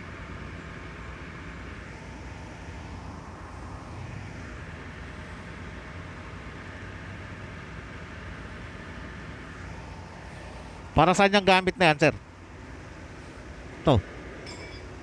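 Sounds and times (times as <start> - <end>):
traffic and machinery rumble: 0.0 - 15.0.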